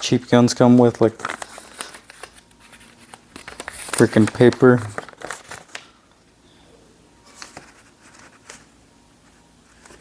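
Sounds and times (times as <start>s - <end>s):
paper rustling: 0.0s - 6.0s, 7.3s - 8.7s.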